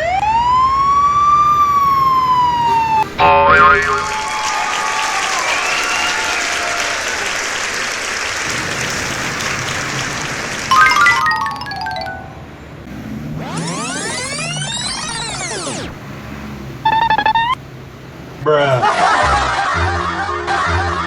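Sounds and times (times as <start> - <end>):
siren wailing: 0.0 - 3.2, 13.4 - 16.0, 16.9 - 17.6
music: 10.7 - 12.5
noisy mix: 13.4 - 16.0, 16.9 - 17.6
stepped electronic tones: 13.4 - 16.0, 16.8 - 17.6.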